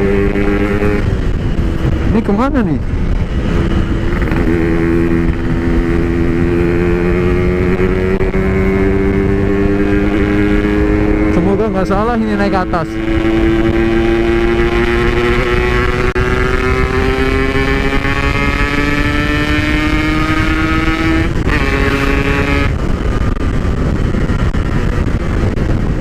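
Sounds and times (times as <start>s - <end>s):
motorcycle engine accelerating: 0.0s - 26.0s
wind rush: 0.0s - 26.0s.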